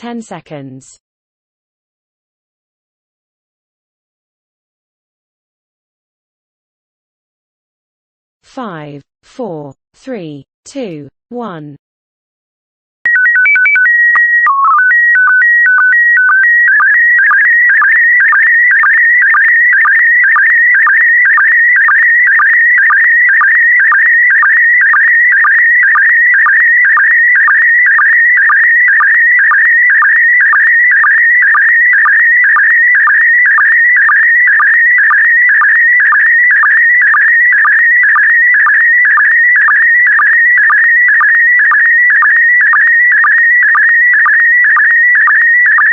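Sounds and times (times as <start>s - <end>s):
stepped beeps: 13.1s - 45.9s.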